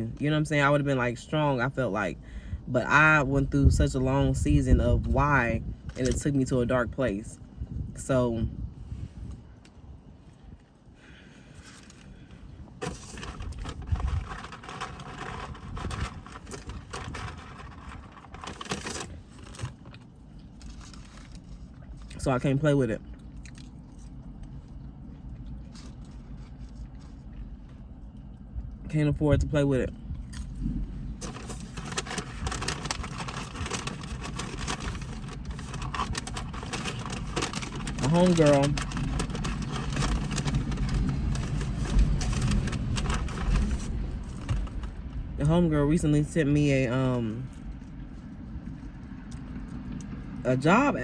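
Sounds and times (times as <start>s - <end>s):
low engine rumble: 0.0s - 51.0s
food wrapper rustling: 11.6s - 22.1s, 23.2s - 28.3s, 30.2s - 45.1s
small clicks and crackles: 31.2s - 45.0s.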